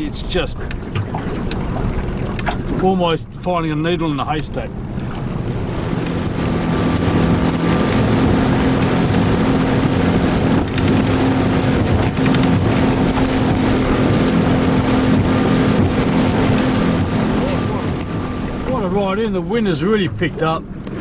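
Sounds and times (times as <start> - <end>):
boat engine running: 0.0 - 21.0
hull knocking on waves: 0.0 - 21.0
wind on microphone: 0.0 - 21.0.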